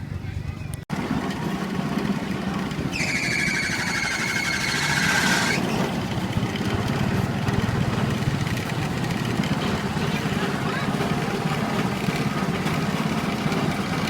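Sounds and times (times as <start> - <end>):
motorbike engines in traffic: 0.0 - 14.0.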